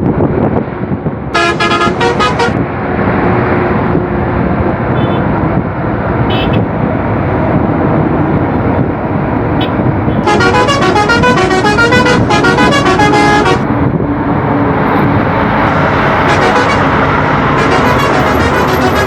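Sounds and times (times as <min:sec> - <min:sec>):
bus engine: 0:00.0 - 0:19.0
traffic: 0:00.0 - 0:19.0
bus multi-tone horn tune: 0:01.4 - 0:02.8, 0:04.9 - 0:05.3, 0:06.3 - 0:06.7, 0:09.6 - 0:13.7, 0:14.9 - 0:19.0.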